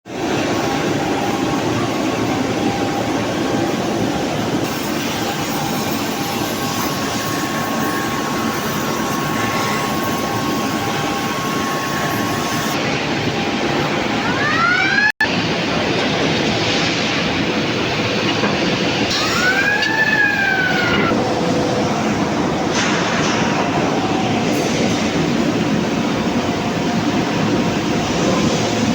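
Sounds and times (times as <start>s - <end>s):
steady machine tone: 0.1s - 14.4s
rolling-mill machinery din: 0.1s - 28.9s
high squeal: 0.2s - 12.8s, 19.1s - 22.7s.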